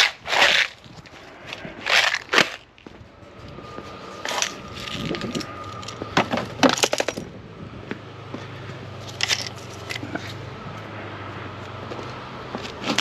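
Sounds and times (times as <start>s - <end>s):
metal parts clinking: 1.8s - 2.7s, 4.2s - 7.3s, 9.0s - 10.4s.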